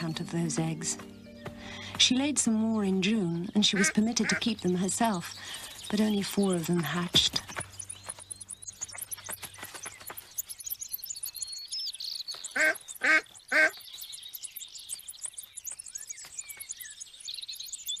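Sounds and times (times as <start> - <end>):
small birds chirping: 0.0 - 18.0
duck quacking: 3.7 - 4.6.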